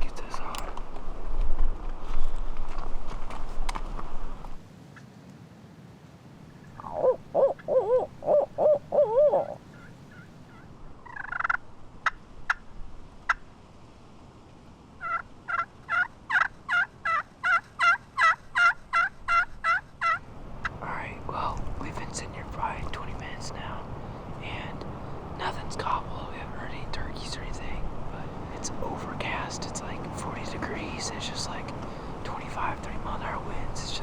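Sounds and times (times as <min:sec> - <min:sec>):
sharp turkey calls: 0:06.7 - 0:13.5, 0:15.0 - 0:20.8
wavering owl-like hoots: 0:06.8 - 0:11.6.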